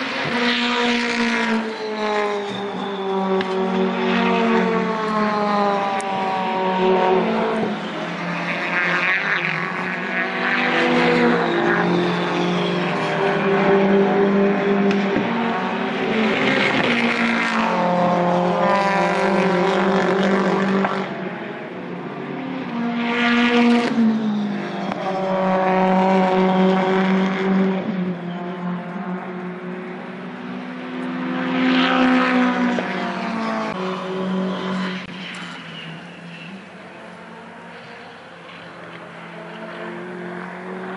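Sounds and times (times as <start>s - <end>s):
race cars passing at speed: 0.0s - 40.9s.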